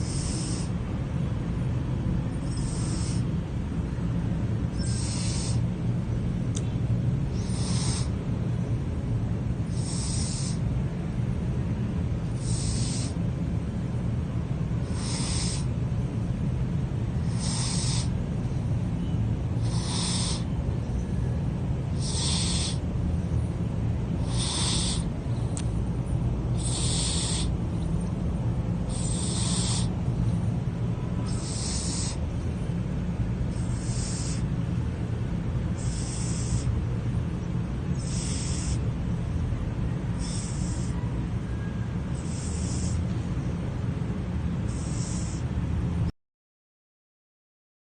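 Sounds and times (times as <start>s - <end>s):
cat snoring: 0.0s - 0.7s, 2.4s - 3.3s, 4.8s - 5.6s, 7.4s - 8.1s, 9.7s - 10.6s, 12.3s - 13.2s, 14.8s - 15.7s, 17.2s - 18.1s, 19.6s - 20.5s, 22.0s - 22.8s, 24.2s - 25.1s, 26.6s - 27.5s, 28.9s - 29.9s, 31.3s - 32.2s, 33.5s - 34.4s, 35.8s - 36.7s, 38.0s - 38.8s, 40.2s - 40.9s, 42.2s - 43.0s
steady low rumble: 0.0s - 46.1s.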